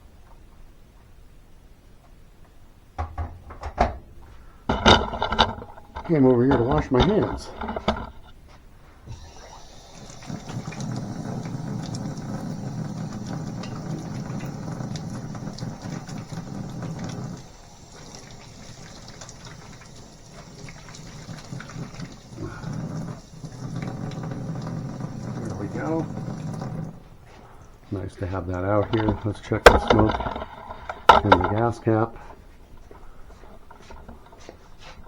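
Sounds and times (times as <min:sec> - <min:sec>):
water running from a tap: 0:04.7 - 0:08.3, 0:09.1 - 0:32.2.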